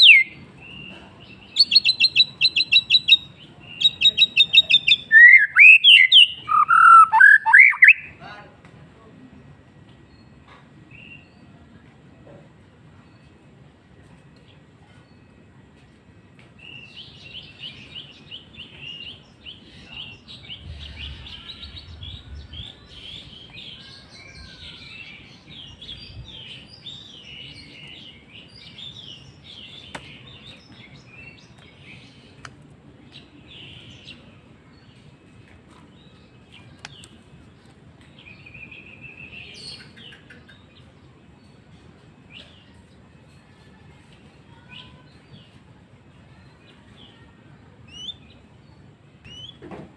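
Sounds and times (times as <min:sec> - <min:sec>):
bird trill: 0:00.0 - 0:00.4, 0:01.5 - 0:08.1
bird singing whistled notes: 0:00.0 - 0:00.8, 0:01.5 - 0:08.1, 0:49.2 - 0:49.6.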